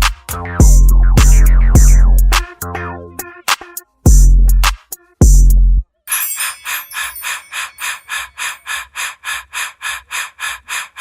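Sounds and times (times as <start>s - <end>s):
hip-hop beat with heavy bass: 0.0s - 5.8s.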